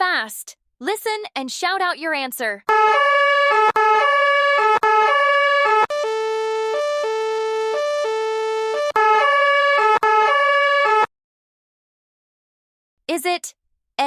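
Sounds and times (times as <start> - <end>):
toy electronic two-tone siren: 2.7 - 11.1.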